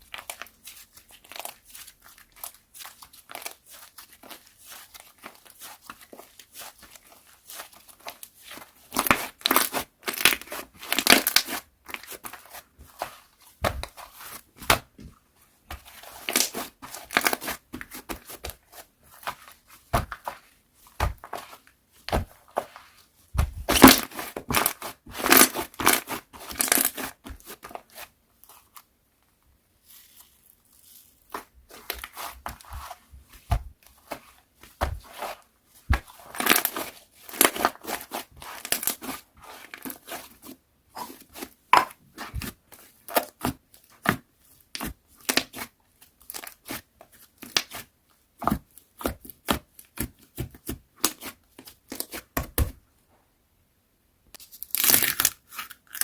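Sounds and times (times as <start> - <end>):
slime crackling and popping: 9.0 - 11.6, 54.4 - 56.0.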